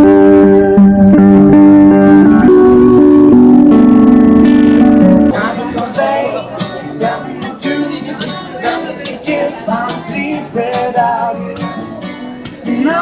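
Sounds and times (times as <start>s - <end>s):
plucked acoustic guitar: 0.0s - 13.0s
person singing: 4.4s - 13.0s.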